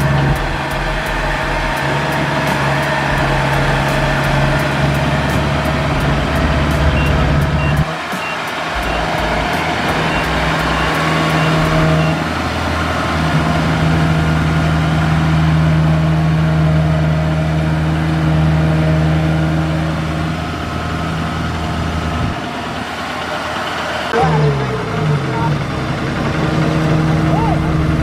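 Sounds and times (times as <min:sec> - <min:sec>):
harvesting machine engine running: 0:00.0 - 0:28.0.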